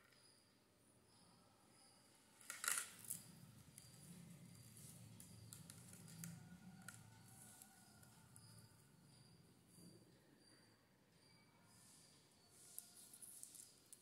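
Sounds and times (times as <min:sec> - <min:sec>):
beads clicking: 0:12.6 - 0:14.0.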